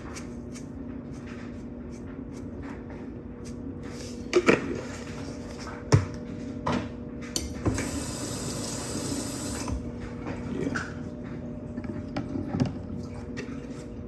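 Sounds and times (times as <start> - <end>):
water running into a container: 7.7 - 9.7.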